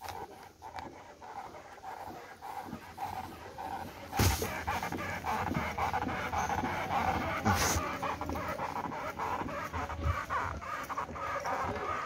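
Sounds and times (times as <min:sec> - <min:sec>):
thump: 0:04.2 - 0:04.5.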